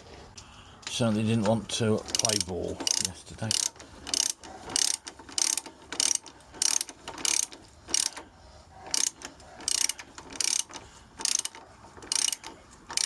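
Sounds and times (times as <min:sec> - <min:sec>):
ratchet wrench clicking: 0:02.0 - 0:08.2, 0:08.9 - 0:13.0.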